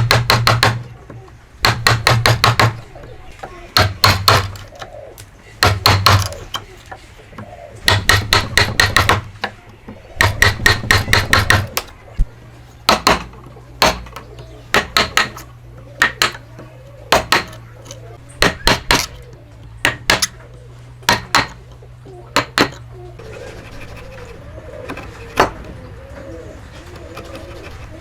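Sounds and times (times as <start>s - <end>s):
hammer strikes: 12.9s - 15.4s, 17.1s - 17.6s, 18.4s - 19.2s, 21.0s - 21.6s.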